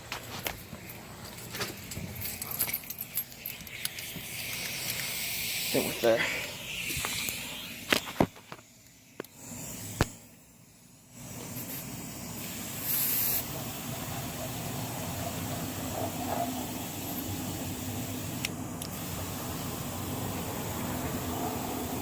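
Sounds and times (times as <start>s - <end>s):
air hiss burst: 3.7s - 22.0s
air compressor running: 11.1s - 22.0s.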